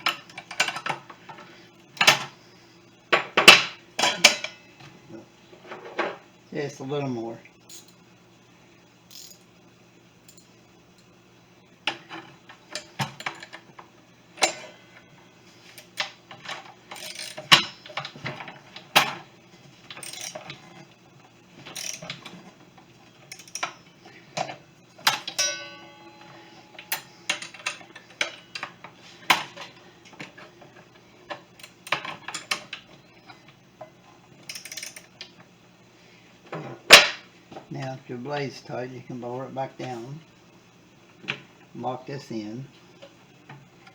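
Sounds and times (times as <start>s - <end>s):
wrench clicking on metal bolt: 21.8s - 22.1s
short metallic ring: 25.4s - 26.9s.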